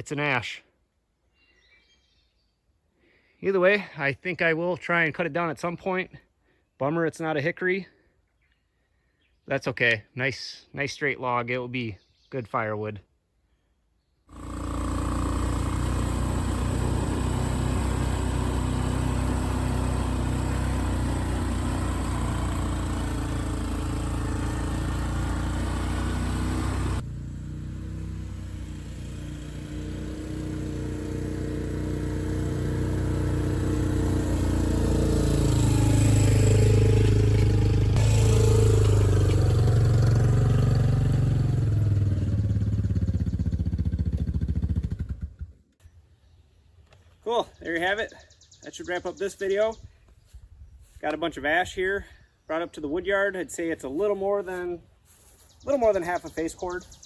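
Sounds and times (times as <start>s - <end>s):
atv engine running: 14.3s - 45.6s.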